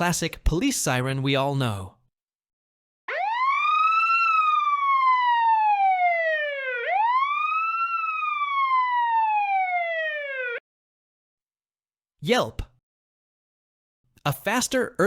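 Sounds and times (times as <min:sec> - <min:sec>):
police siren wailing: 0:03.1 - 0:10.6.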